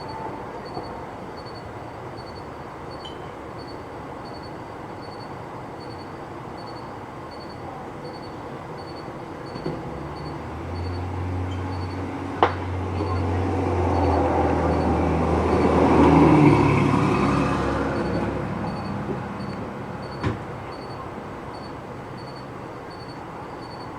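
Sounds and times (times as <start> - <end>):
vehicle engine drone: 8.0 - 23.9.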